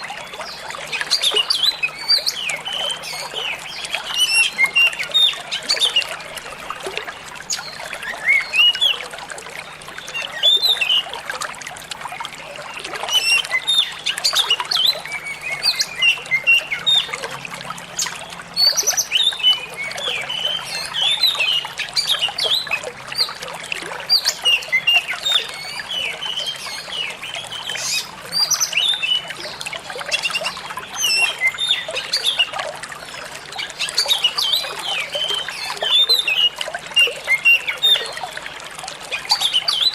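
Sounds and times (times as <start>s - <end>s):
water trickling: 0.0s - 39.9s
bird singing chirps and whistles: 7.5s - 9.0s, 13.1s - 17.2s, 18.0s - 23.4s, 30.1s - 32.6s.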